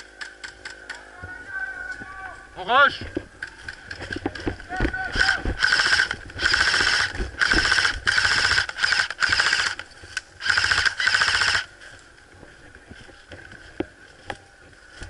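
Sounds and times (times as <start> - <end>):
airsoft rifle firing bursts: 5.0 - 9.8, 10.4 - 11.7.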